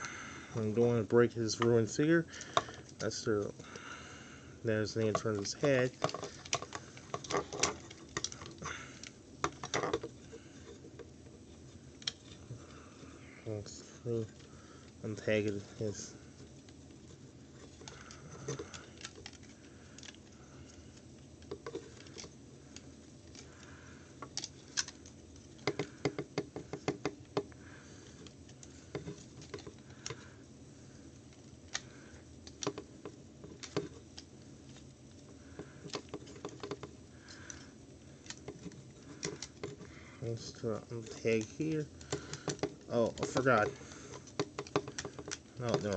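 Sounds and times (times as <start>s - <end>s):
plastic toy parts clicking: 24.2s - 27.5s, 31.6s - 34.8s, 38.2s - 39.9s, 40.9s - 45.9s.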